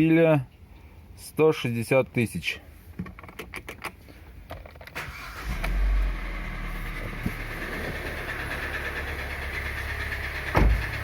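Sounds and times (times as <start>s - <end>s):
car engine starting and idling: 4.8s - 11.0s.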